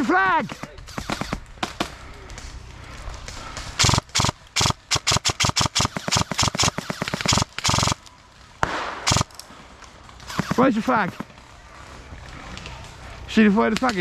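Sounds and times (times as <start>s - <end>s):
airsoft guns firing: 0.4s - 2.0s, 3.8s - 8.0s, 8.6s - 9.4s, 10.2s - 11.3s.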